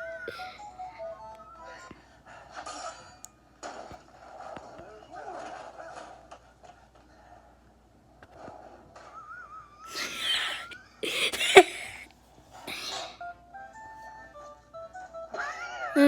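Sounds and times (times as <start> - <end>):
wheezing laughter: 9.9 - 12.0.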